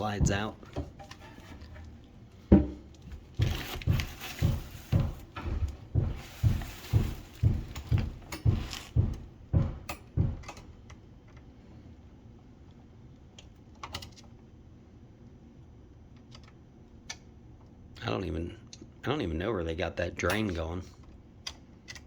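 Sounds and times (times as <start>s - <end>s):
ice machine knocking in cabinet: 0.0s - 1.9s, 2.5s - 10.6s
scraping: 0.0s - 2.1s, 3.4s - 9.1s.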